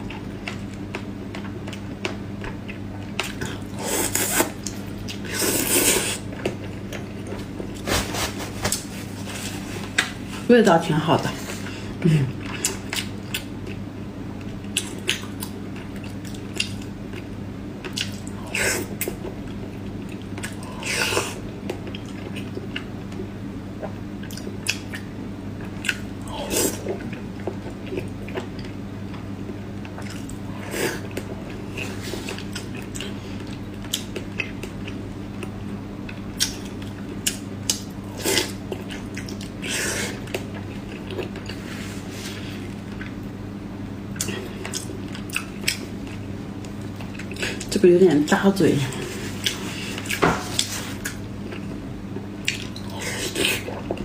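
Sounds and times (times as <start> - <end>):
steady low hum: 0.0 - 54.0
wet chewing and smacking: 14.4 - 20.8, 31.0 - 41.6, 44.1 - 47.7, 49.4 - 54.0.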